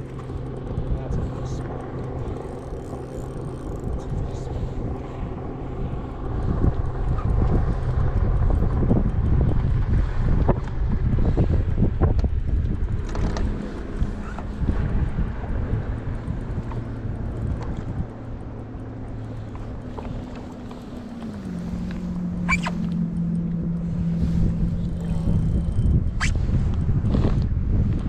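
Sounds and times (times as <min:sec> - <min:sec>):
short rattle: 0:00.0 - 0:04.3, 0:16.0 - 0:26.4
boat motor hum: 0:00.0 - 0:28.0
wind rumbling on microphone: 0:00.0 - 0:28.0.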